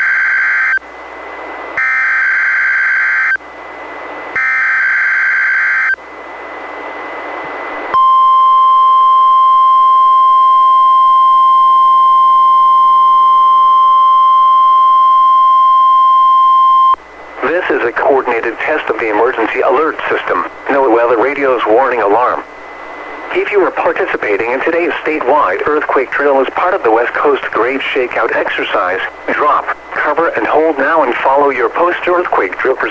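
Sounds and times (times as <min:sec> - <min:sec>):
steady warning alarm tone: 0:00.0 - 0:00.9, 0:01.8 - 0:03.4, 0:04.3 - 0:06.0, 0:07.9 - 0:32.9
radio hiss: 0:12.1 - 0:32.9.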